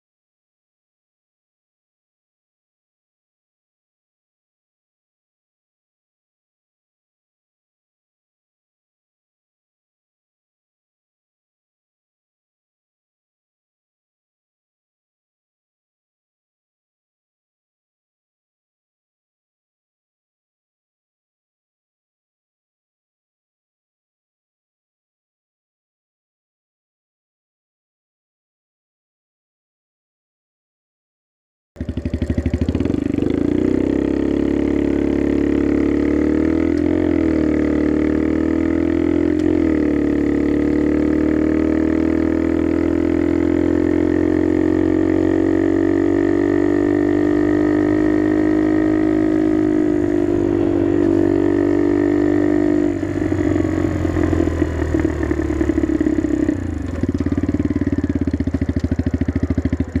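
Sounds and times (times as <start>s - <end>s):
motorcycle engine running: 31.8s - 60.0s.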